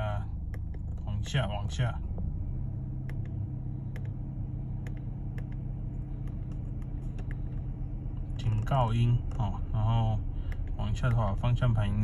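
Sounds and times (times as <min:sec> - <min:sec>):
low hum in car cabin: 0:00.0 - 0:12.0
steering wheel button clicks: 0:00.4 - 0:01.4, 0:03.0 - 0:04.2, 0:04.8 - 0:07.7, 0:10.5 - 0:11.2.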